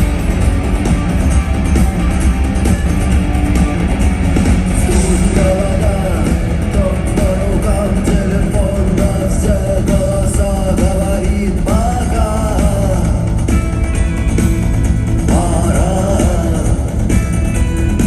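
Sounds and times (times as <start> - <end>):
bass: 0.0 - 18.0
drums: 0.0 - 18.0
electric guitars: 0.0 - 18.0
person singing: 4.8 - 13.3, 15.3 - 17.1.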